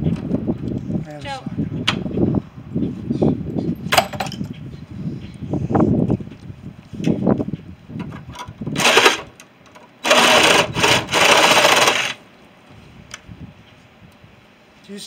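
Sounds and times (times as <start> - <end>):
power saw cutting metal: 8.8 - 9.3, 10.0 - 12.2.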